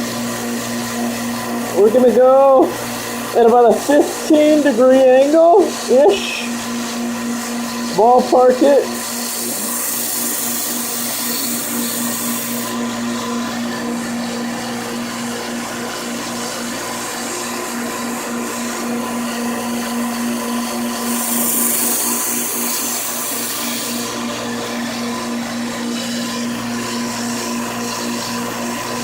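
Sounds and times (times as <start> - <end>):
belt grinder motor hum: 0.0 - 29.0
knife grinding hiss: 8.8 - 12.9, 20.8 - 24.2.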